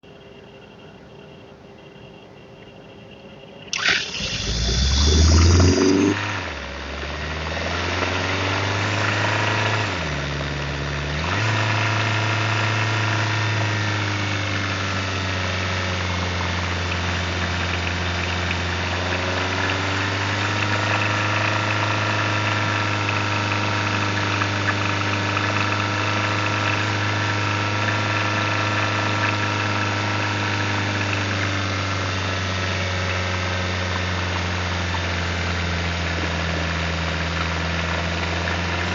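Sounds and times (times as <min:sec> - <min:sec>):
car engine running: 0:03.8 - 0:38.9.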